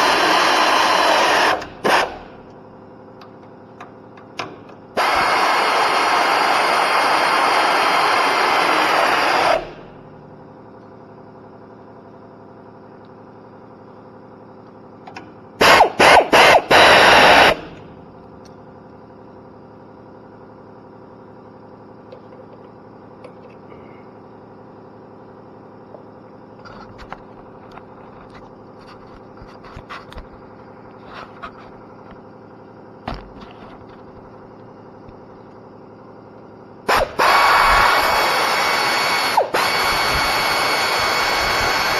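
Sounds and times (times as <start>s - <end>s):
power tool running bolts in: 0.0s - 2.4s, 5.0s - 9.9s, 15.6s - 17.8s, 36.9s - 41.9s.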